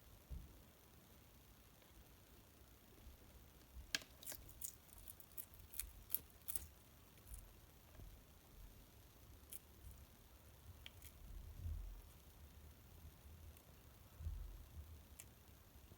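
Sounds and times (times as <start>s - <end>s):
chameleon crunching insect: 3.8s - 7.6s, 9.4s - 10.1s, 10.7s - 11.3s.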